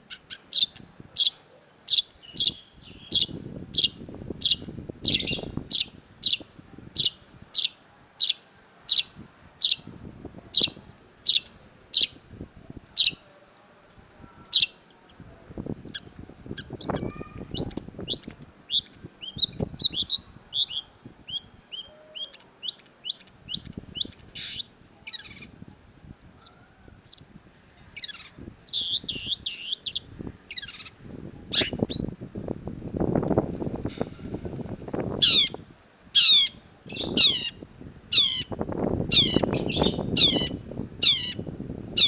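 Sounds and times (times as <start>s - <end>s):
bird singing: 0.1s - 6.4s, 16.0s - 31.0s, 36.2s - 42.0s.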